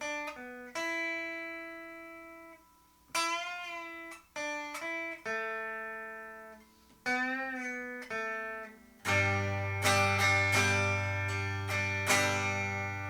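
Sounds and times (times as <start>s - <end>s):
electric guitar strummed chords: 3.1s - 13.0s
electric guitar single notes: 3.2s - 13.0s.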